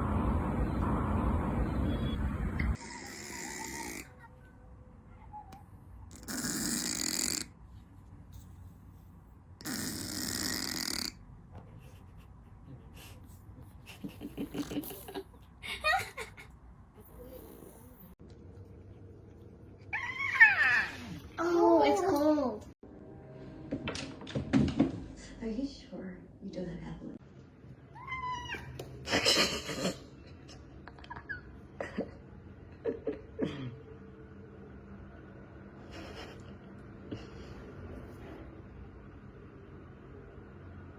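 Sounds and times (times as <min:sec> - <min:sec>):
rasping snoring: 0:02.8 - 0:04.1, 0:06.1 - 0:07.5, 0:09.6 - 0:11.2
cat meowing: 0:02.8 - 0:04.3, 0:27.9 - 0:28.8.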